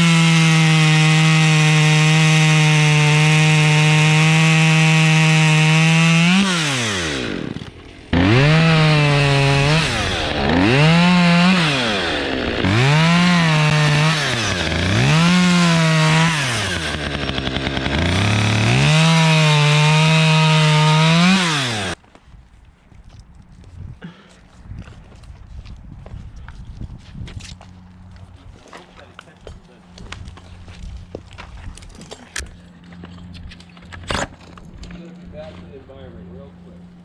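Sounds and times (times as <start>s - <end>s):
chainsaw revving: 0.0s - 22.0s.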